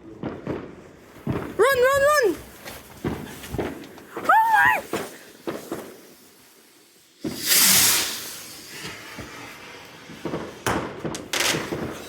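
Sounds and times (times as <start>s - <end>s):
firework hissing: 1.0s - 12.0s.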